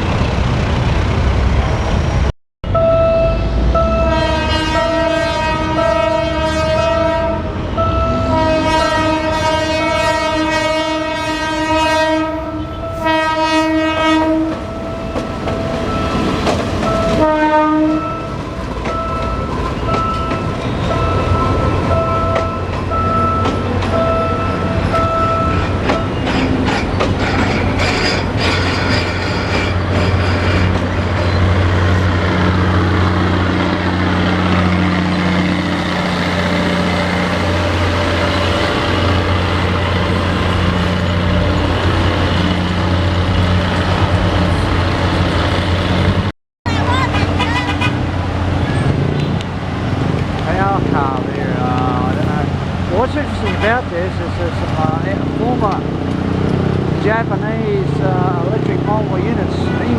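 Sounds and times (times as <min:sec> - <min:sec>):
train engine rumble: 0:00.0 - 0:59.9
train horn blasts: 0:02.7 - 0:15.2, 0:16.8 - 0:18.4, 0:47.0 - 0:48.1
wheels clattering on rails: 0:14.0 - 0:59.9.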